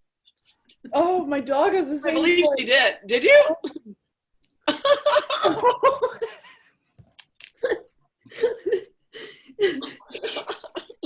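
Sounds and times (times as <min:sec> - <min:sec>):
person laughing: 0:04.7 - 0:06.6, 0:09.6 - 0:11.0.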